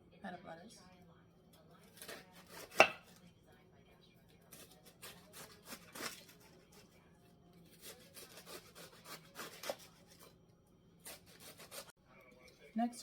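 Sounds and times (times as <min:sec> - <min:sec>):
knife chopping lettuce: 0:01.8 - 0:03.2, 0:04.5 - 0:06.9, 0:07.6 - 0:10.4, 0:11.0 - 0:11.9.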